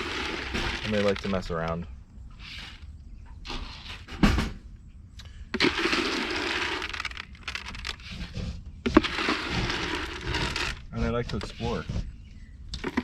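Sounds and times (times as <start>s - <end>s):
pigs scraping and rustling: 0.0s - 4.1s, 5.5s - 13.0s.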